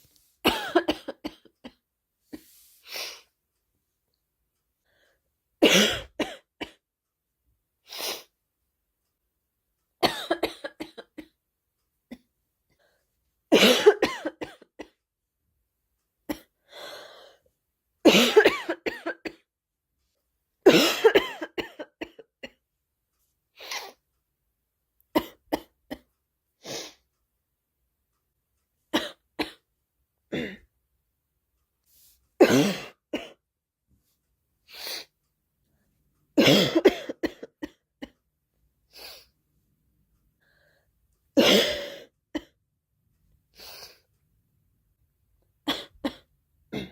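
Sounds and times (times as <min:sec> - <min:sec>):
girl coughing: 0:00.5 - 0:01.5, 0:05.6 - 0:06.8, 0:10.0 - 0:11.3, 0:13.5 - 0:14.9, 0:18.1 - 0:19.4, 0:20.7 - 0:22.2, 0:32.4 - 0:33.4, 0:36.4 - 0:37.7, 0:41.4 - 0:42.5, 0:45.7 - 0:46.9
girl breathing: 0:16.7 - 0:17.4.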